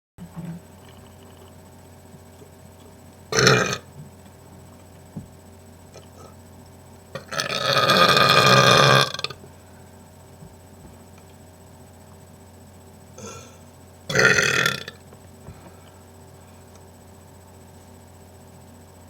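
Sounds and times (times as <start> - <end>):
man burping: 3.3 - 3.9, 7.2 - 9.4, 13.2 - 15.0.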